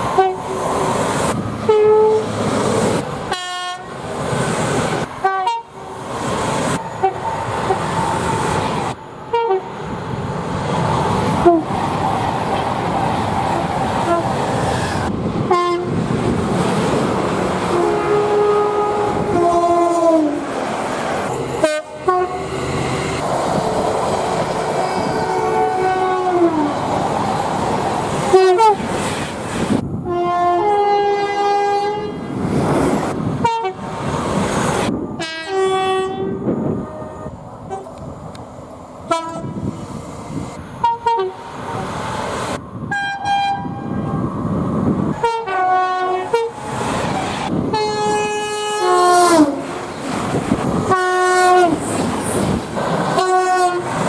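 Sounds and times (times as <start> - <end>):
trains running on rails: 0.0 - 54.0
train horn blasts: 0.2 - 0.5, 1.6 - 2.3, 3.3 - 3.9, 5.2 - 5.9, 9.3 - 9.7, 11.4 - 11.7, 14.0 - 14.4, 15.5 - 16.0, 17.7 - 20.4, 21.6 - 23.2, 25.2 - 26.8, 28.3 - 28.8, 30.0 - 32.2, 33.4 - 33.8, 35.2 - 37.9, 39.1 - 39.6, 40.8 - 41.5, 42.9 - 44.1, 45.2 - 46.6, 47.7 - 49.7, 50.8 - 51.9, 53.2 - 53.9.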